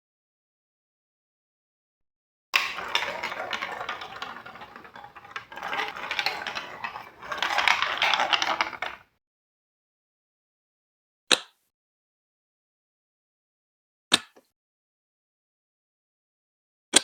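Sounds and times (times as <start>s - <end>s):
marbles rattling on plastic blocks: 2.6s - 9.0s.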